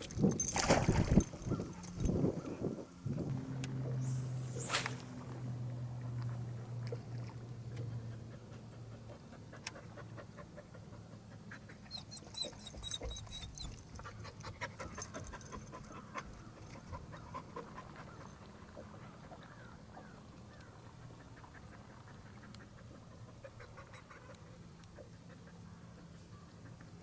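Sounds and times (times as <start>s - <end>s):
low hum: 3.0s - 8.2s.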